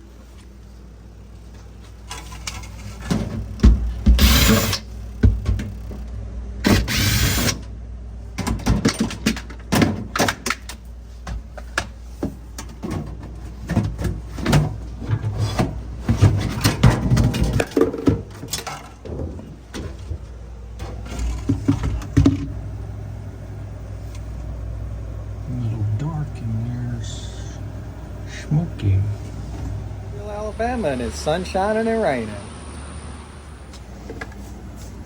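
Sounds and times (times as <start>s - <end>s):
steady low hum: 0.0s - 35.0s
tools knocking and clattering: 8.4s - 22.5s.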